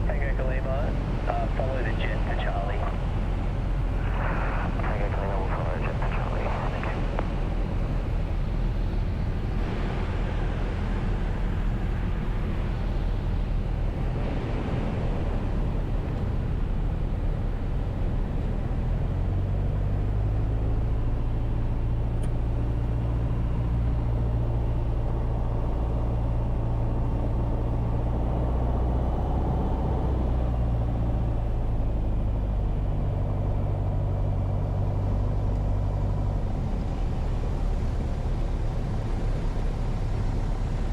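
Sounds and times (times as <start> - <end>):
steady low hum: 0.0 - 18.2
aircraft engine and propeller: 0.0 - 40.9.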